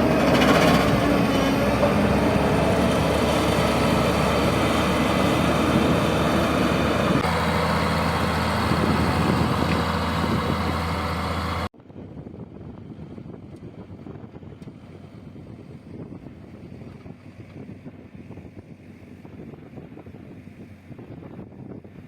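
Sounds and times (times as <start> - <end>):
heavy diesel engine running: 0.0 - 11.7.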